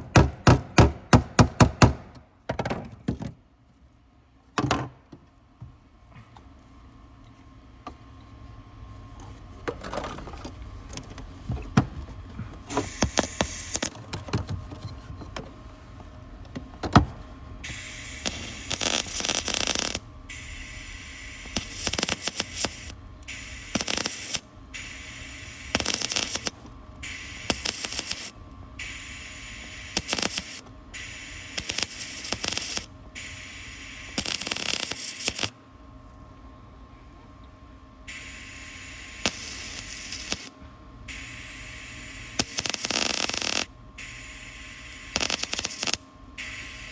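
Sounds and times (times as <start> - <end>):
welding arc crackling: 12.8 - 13.9, 17.6 - 35.5, 38.1 - 40.5, 41.1 - 46.9.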